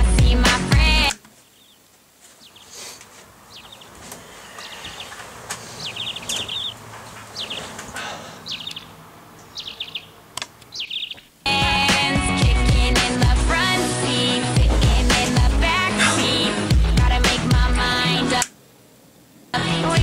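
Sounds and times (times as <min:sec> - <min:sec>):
songbirds trilling: 0:01.3 - 0:11.5.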